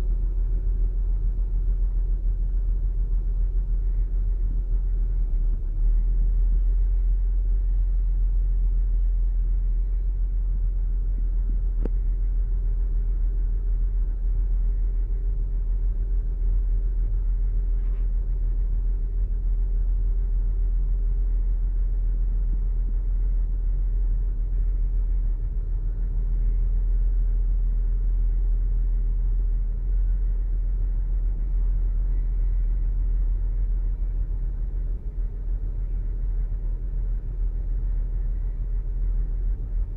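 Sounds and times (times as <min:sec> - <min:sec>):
car engine running: 0:00.0 - 0:39.9
faint click: 0:11.8 - 0:12.1.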